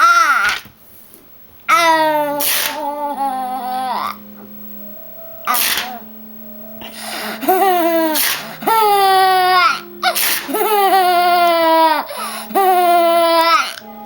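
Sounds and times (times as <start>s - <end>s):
child shrieking with laughter: 0.0s - 0.6s, 7.5s - 13.8s.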